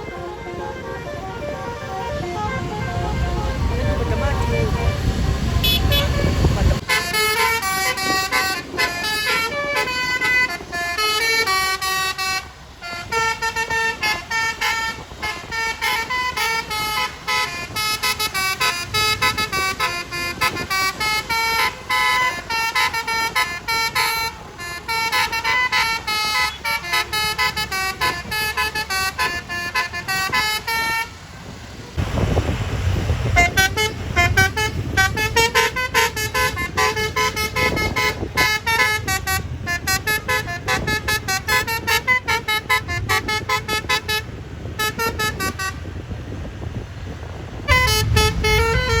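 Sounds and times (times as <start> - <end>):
musical air horn: 0.0 - 31.3, 33.0 - 46.8, 47.6 - 49.0
bus engine rumble: 0.0 - 49.0.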